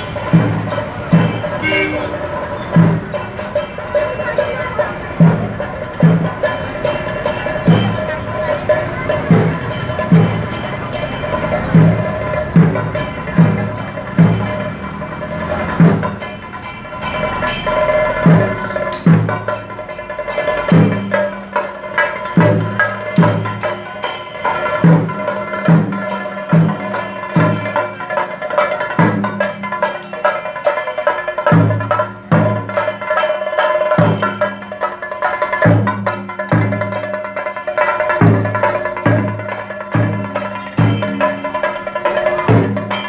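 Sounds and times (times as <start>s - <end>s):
sharp percussion strikes: 0.0s - 43.0s
band music: 1.5s - 2.9s.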